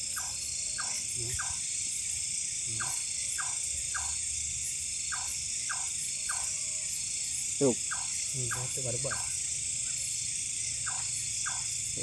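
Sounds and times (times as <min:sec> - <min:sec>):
insect chorus: 0:00.0 - 0:12.0.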